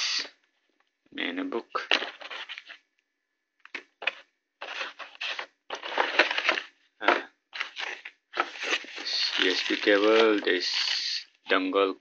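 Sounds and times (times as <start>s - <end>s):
plastic packaging rustling: 1.8s - 2.8s, 3.7s - 11.2s.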